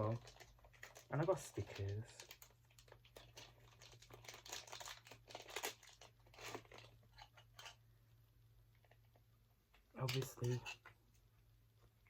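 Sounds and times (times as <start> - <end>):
plastic packaging crinkling: 0.0 - 7.8
low electrical hum: 0.0 - 12.0.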